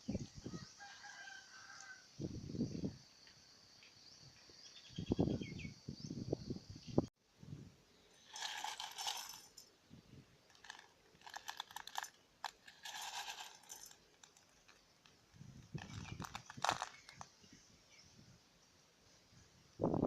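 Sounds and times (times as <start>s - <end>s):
metal pieces clinking and rattling: 8.2s - 9.7s, 10.5s - 14.9s, 15.7s - 17.2s.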